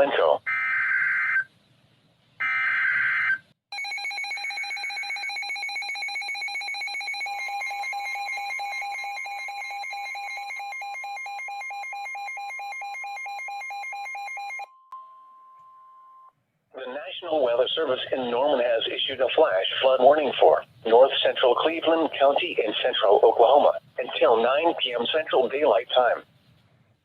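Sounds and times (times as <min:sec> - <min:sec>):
rapid alarm pulses: 0:02.4 - 0:14.6
steady attention tone: 0:14.6 - 0:26.3.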